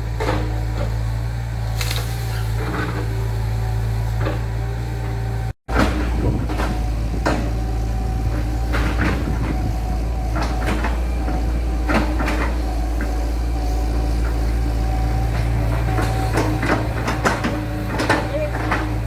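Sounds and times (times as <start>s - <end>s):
heavy machinery engine running: 0.0s - 19.0s
metallic clanks and knocks: 15.2s - 19.0s.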